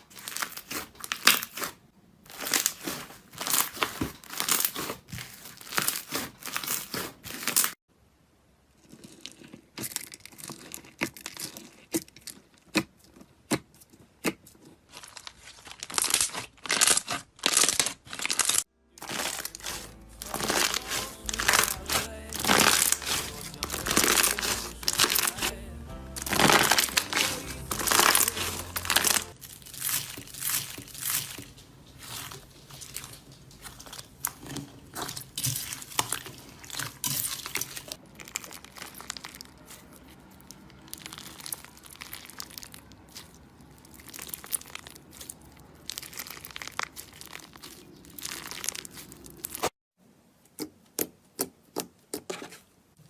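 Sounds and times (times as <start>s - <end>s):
slime crackling and popping: 0.0s - 7.8s, 8.8s - 25.5s, 26.2s - 49.7s
background music: 18.7s - 29.4s.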